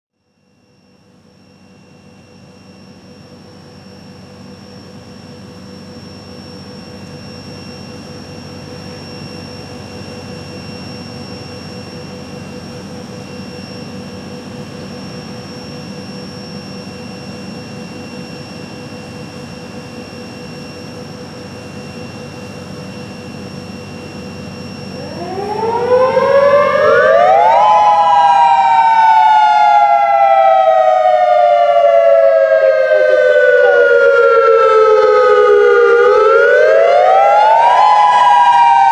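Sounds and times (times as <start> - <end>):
dual tone warning siren: 0.4 - 38.9
steady background noise: 3.6 - 38.9.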